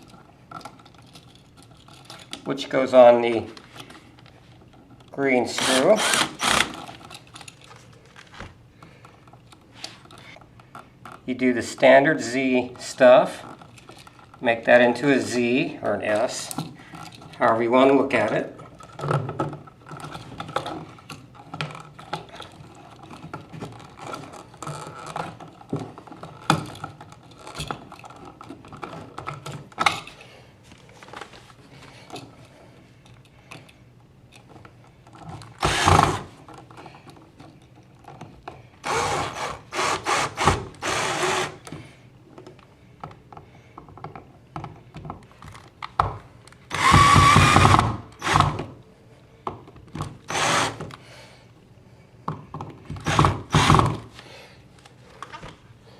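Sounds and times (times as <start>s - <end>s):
cordless drill driving screws: 5.6s - 6.9s, 35.6s - 36.3s, 38.8s - 41.7s, 46.7s - 48.6s, 50.3s - 50.8s, 53.0s - 54.0s.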